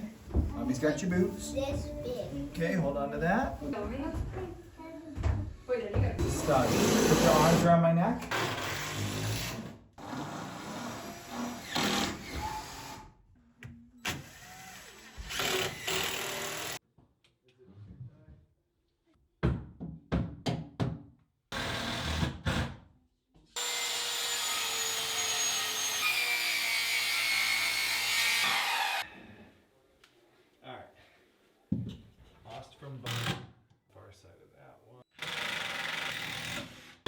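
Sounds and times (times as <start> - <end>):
power tool running: 23.6 - 29.0.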